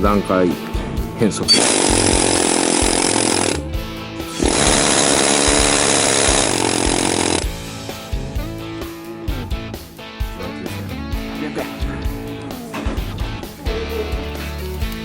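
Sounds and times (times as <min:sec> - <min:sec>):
background music: 0:00.0 - 0:15.0
benchtop power tool running: 0:01.5 - 0:07.6.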